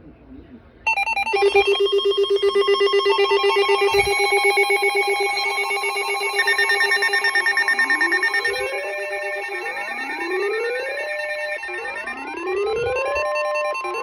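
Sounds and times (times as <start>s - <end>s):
pulsing electronic tones: 0.9s - 14.0s
rising electronic sweeps: 0.9s - 14.0s.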